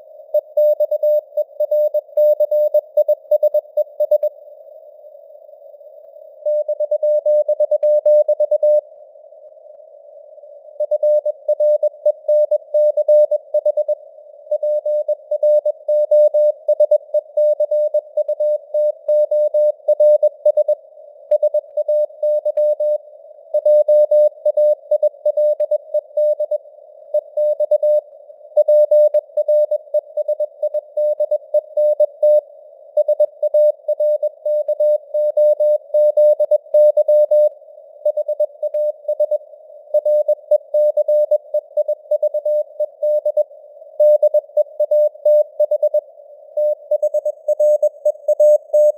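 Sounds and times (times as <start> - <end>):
morse code tone: 46.6 - 48.9.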